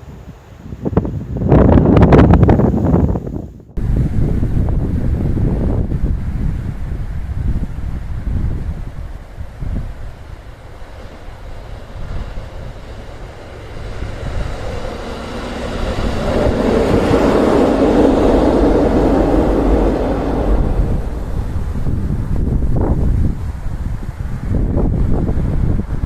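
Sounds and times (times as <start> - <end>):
wind buffeting microphone: 0.0 - 26.0
train passing: 3.8 - 26.0.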